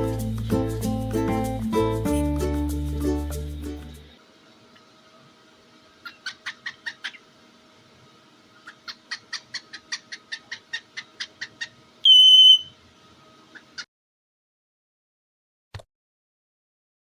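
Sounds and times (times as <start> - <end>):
cockatiel high whistle: 12.0 - 12.8
cockatiel short clipped calls: 12.1 - 12.7.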